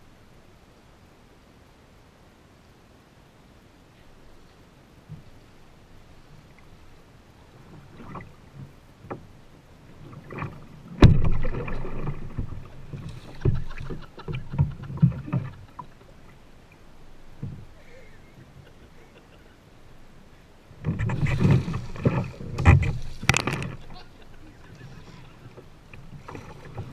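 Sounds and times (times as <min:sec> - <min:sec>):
paddle splashes: 0:04.4 - 0:26.9
knocks on kayak: 0:11.0 - 0:12.6.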